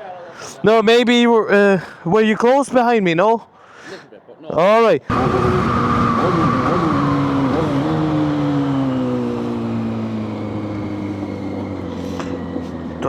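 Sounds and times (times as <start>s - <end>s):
vehicle engine running: 5.1s - 13.0s.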